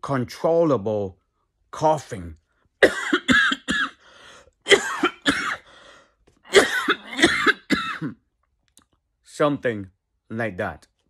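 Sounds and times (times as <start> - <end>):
man coughing: 2.8 - 4.0, 4.7 - 5.7, 6.5 - 8.3.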